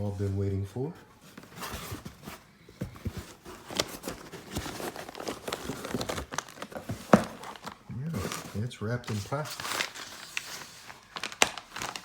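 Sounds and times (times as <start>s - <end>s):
cardboard box taps and rustling: 1.4s - 8.5s.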